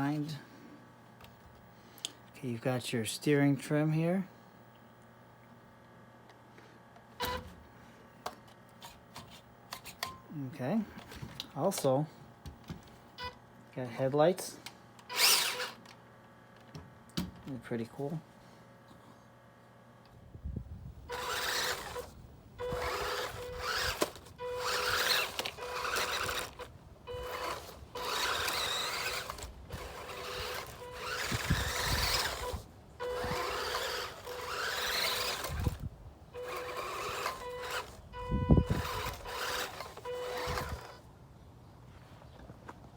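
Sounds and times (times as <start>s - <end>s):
electric motor revving: 15.1s - 15.8s, 21.1s - 38.1s, 38.7s - 41.0s.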